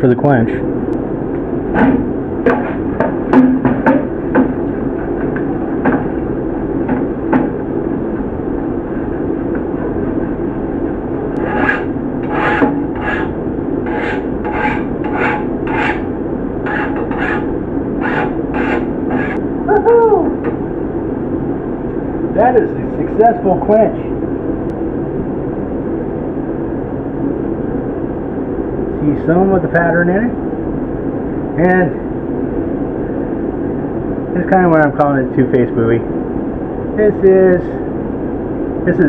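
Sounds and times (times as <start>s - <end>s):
steady rushing noise: 0.6s - 19.7s.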